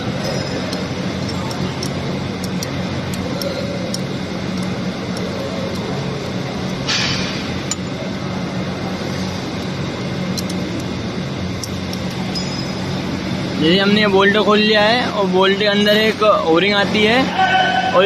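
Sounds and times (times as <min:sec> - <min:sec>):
steady background hum: 0:00.0 - 0:18.0
small metal clicks: 0:00.2 - 0:05.9, 0:09.6 - 0:12.8.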